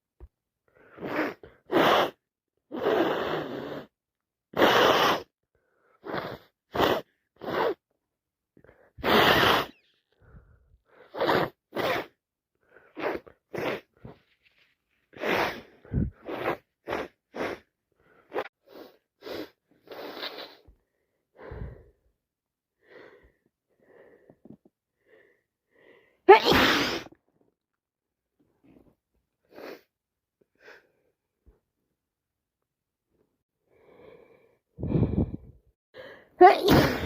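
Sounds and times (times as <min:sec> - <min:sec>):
short breathy sounds: 0:08.6 - 0:22.1, 0:33.7 - 0:37.0
woman sneezing: 0:26.3 - 0:27.2, 0:36.4 - 0:37.0.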